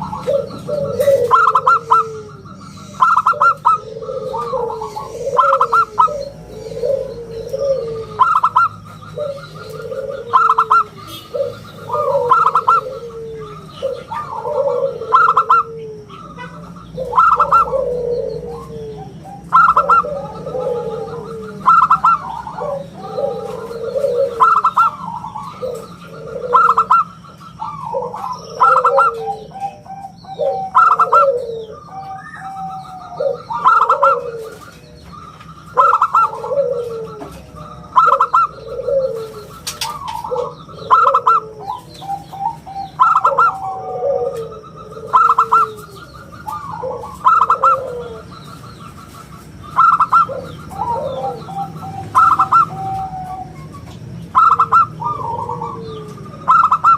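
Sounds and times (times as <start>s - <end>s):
dove cooing: 0.0s - 56.9s.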